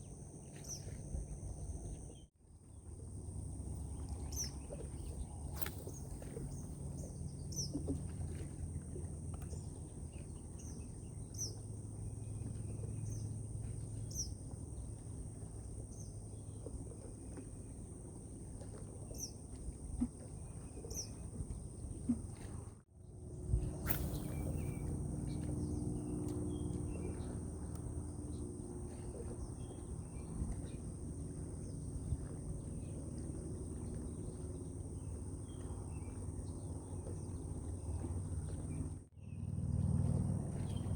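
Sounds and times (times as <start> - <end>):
low rumble: 21.8 - 40.9.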